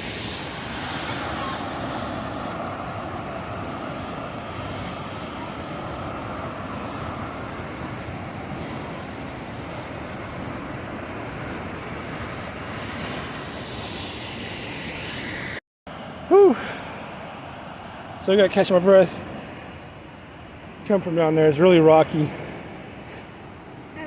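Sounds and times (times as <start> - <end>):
waterfall roar: 0.0 - 13.3.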